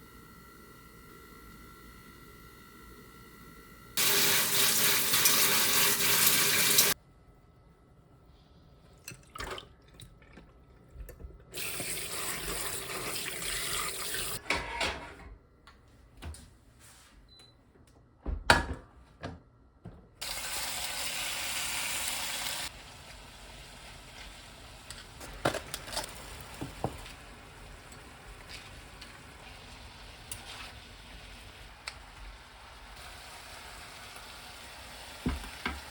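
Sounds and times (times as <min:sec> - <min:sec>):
sink tap running: 0:04.0 - 0:07.0, 0:11.6 - 0:14.4, 0:35.0 - 0:35.9.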